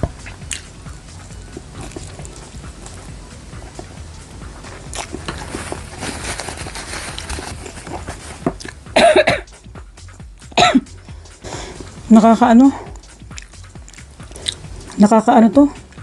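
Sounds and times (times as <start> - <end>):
quiet chewing: 0.0 - 8.9, 12.8 - 15.0
person coughing: 8.9 - 9.5, 10.5 - 11.0.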